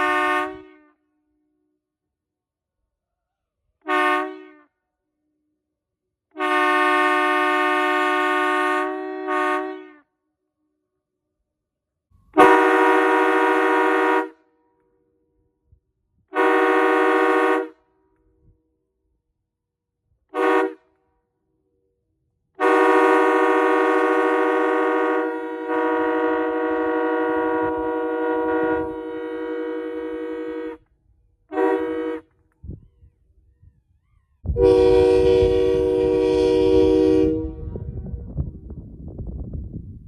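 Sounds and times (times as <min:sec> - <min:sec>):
air horn blasts: 0:00.0 - 0:01.0, 0:03.8 - 0:04.7, 0:06.4 - 0:10.1, 0:12.4 - 0:14.4, 0:16.3 - 0:17.8, 0:20.3 - 0:20.9, 0:22.6 - 0:30.9, 0:31.5 - 0:32.4, 0:34.5 - 0:38.3.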